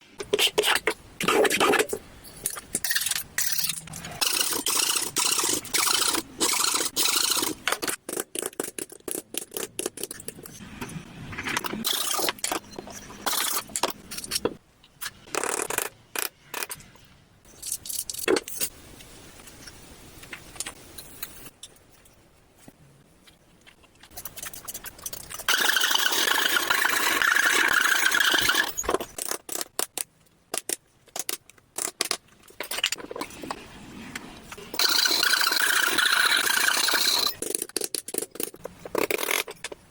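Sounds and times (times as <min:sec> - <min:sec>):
steady loud workshop noise: 0:00.0 - 0:17.1, 0:24.1 - 0:29.9, 0:30.6 - 0:39.9
wood and tools scraping and clattering: 0:31.2 - 0:39.9.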